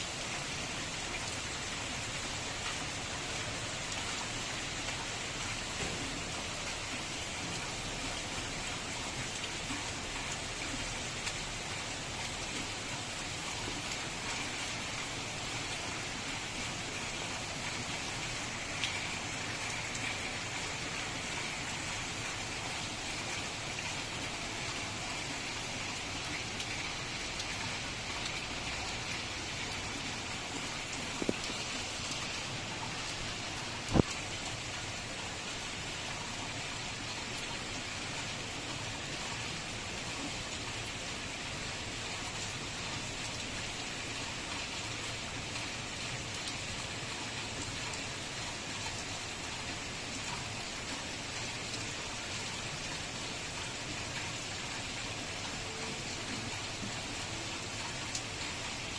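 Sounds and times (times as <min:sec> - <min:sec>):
steady rain: 0:00.0 - 0:58.9
raindrops ticking: 0:01.1 - 0:35.1.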